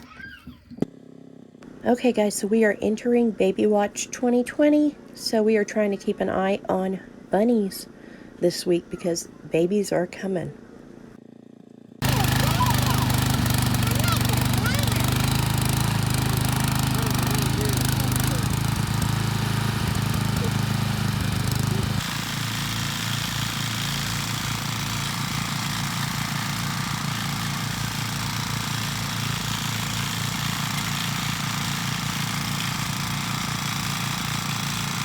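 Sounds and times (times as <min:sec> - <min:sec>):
rototiller engine running: 0:12.0 - 0:35.0.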